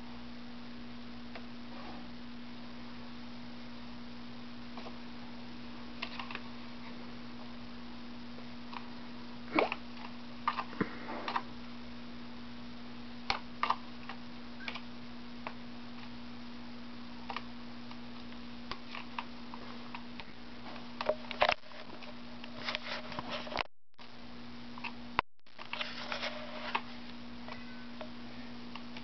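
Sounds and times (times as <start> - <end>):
low electrical hum: 0.0 - 29.0.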